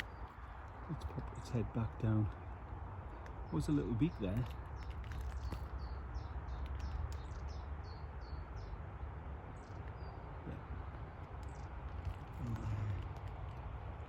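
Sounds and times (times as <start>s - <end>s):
small bird calling: 9.5s - 13.7s.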